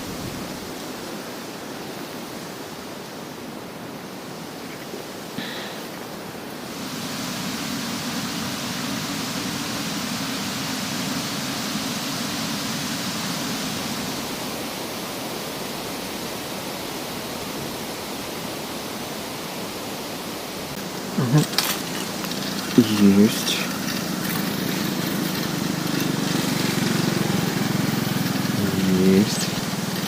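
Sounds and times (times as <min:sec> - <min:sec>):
wind on microphone: 0:00.0 - 0:00.7.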